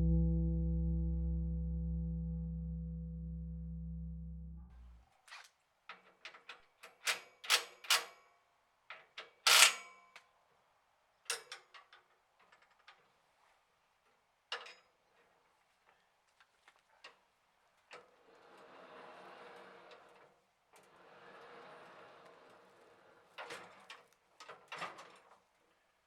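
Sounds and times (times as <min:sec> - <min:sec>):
low steady hum: 0:00.0 - 0:05.0.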